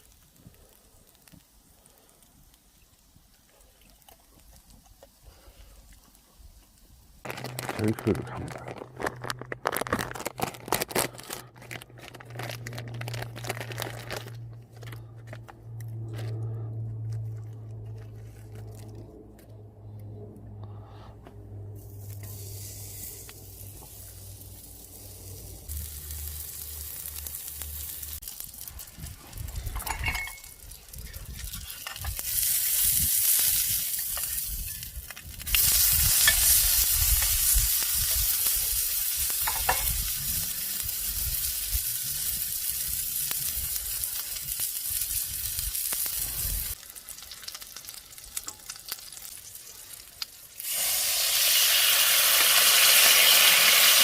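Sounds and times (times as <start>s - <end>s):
food sizzling in a pan: 22.2s - 28.6s, 32.1s - 54.0s.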